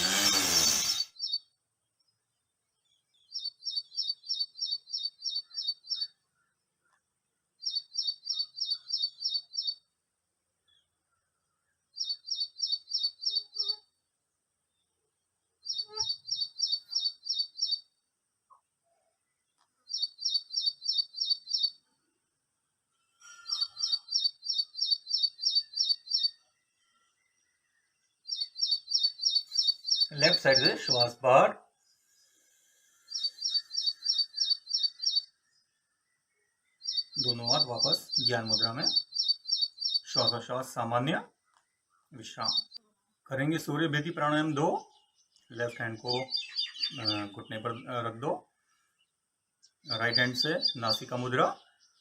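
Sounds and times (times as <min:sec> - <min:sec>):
rough scratchy noise: 0:00.0 - 0:01.1
bird chirping high sharp notes: 0:00.0 - 0:01.4, 0:28.3 - 0:31.3, 0:33.1 - 0:35.3, 0:36.8 - 0:40.6, 0:42.4 - 0:42.8, 0:49.8 - 0:51.6
small bird chirping: 0:00.0 - 0:07.0, 0:07.6 - 0:10.0, 0:11.9 - 0:14.0, 0:15.6 - 0:18.6, 0:19.2 - 0:21.9, 0:23.2 - 0:42.9, 0:44.2 - 0:52.0.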